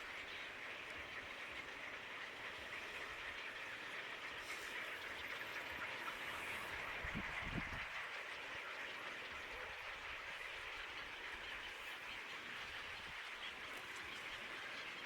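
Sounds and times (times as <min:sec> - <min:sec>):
steady outdoor hiss: 0:00.0 - 0:15.0.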